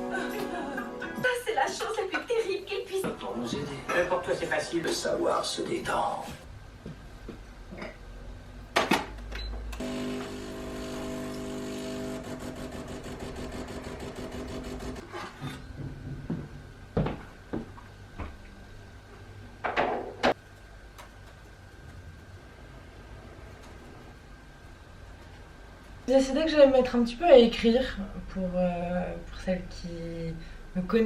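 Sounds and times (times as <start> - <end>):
small machine whirring: 9.8 - 15.1.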